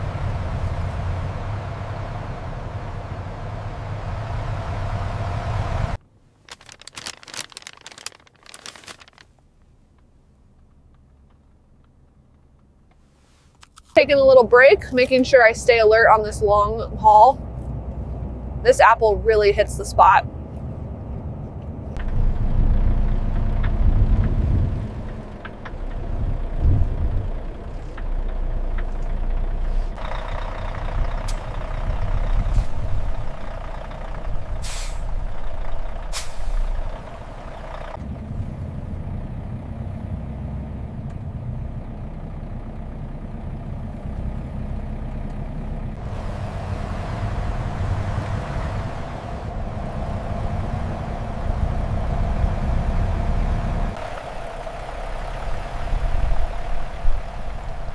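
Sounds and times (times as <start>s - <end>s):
heavy truck engine running: 0.0s - 6.0s, 13.9s - 57.9s
air brake hisses: 34.6s - 35.2s, 36.1s - 36.8s.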